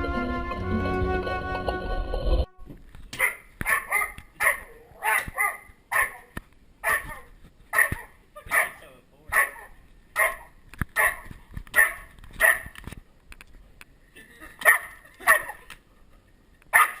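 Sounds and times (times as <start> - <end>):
animal barking: 3.2 - 12.8, 14.6 - 15.7, 16.7 - 17.0.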